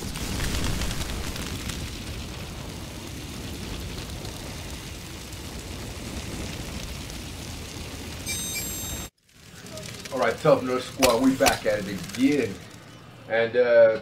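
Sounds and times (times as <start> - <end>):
high chiming tone: 8.2 - 9.1.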